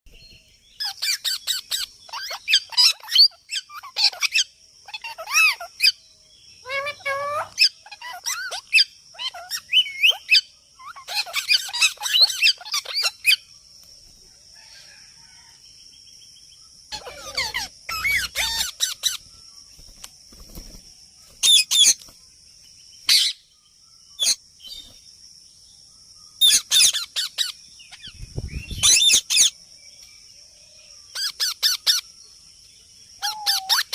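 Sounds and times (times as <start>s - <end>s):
birds chirping: 0.1s - 33.9s.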